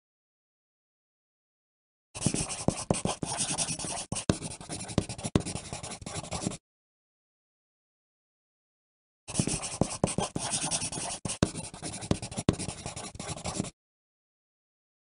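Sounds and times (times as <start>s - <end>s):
pencil writing on paper: 2.2s - 6.6s, 9.3s - 13.8s.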